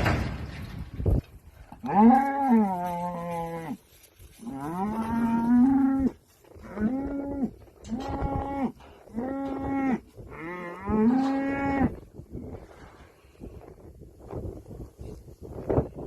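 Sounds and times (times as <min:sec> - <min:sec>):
cattle mooing: 0:01.8 - 0:03.8, 0:04.4 - 0:12.0.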